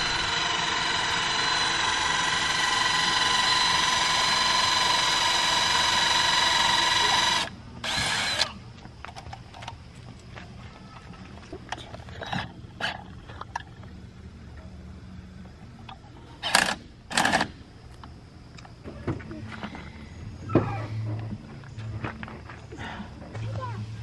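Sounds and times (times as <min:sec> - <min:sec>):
small motor whining: 0:00.0 - 0:08.6.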